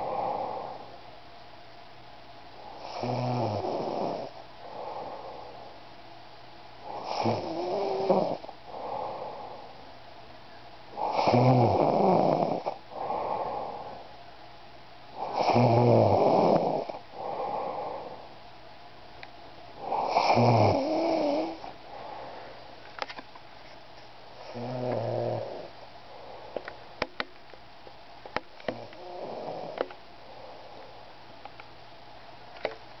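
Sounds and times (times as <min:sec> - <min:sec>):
person snoring: 0:02.8 - 0:05.6, 0:06.9 - 0:09.6, 0:10.9 - 0:14.0, 0:15.2 - 0:18.2, 0:19.8 - 0:22.2, 0:24.4 - 0:25.8, 0:28.6 - 0:29.9
soft breath out: 0:21.5 - 0:22.8.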